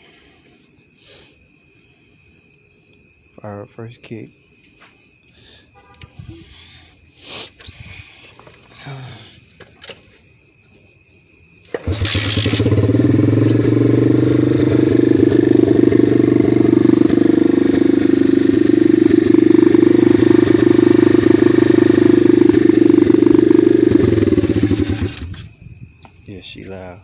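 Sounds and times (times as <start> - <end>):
motorbike engine running: 11.8 - 25.5.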